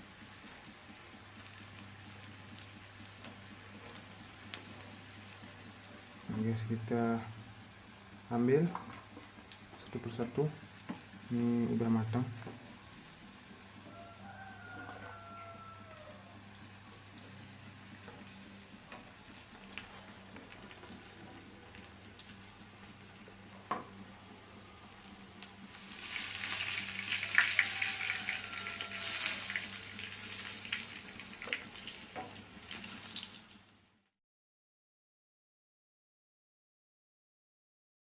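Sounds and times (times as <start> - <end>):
crackling sizzle with pops: 0.0 - 14.0, 15.9 - 34.1
frying oil hiss: 25.7 - 33.8.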